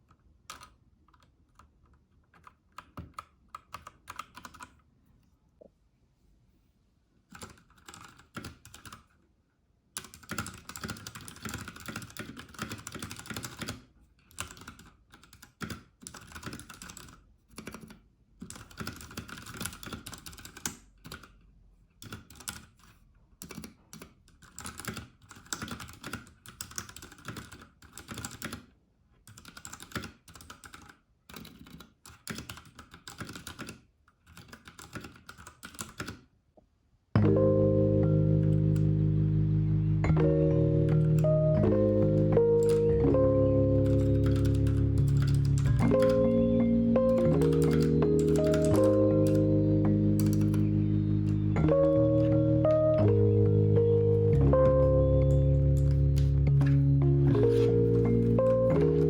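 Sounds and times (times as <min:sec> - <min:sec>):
mechanical keyboard key clacks: 0:43.8 - 0:46.2.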